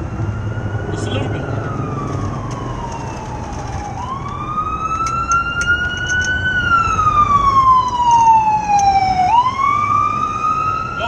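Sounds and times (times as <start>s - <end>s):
emergency siren wailing: 0.0s - 11.0s.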